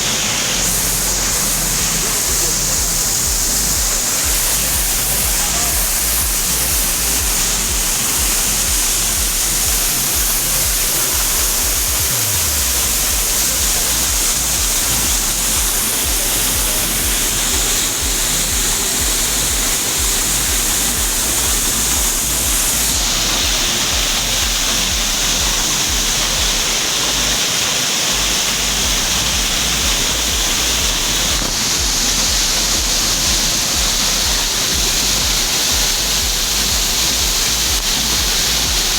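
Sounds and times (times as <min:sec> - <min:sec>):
waterfall rushing: 0:00.0 - 0:38.9.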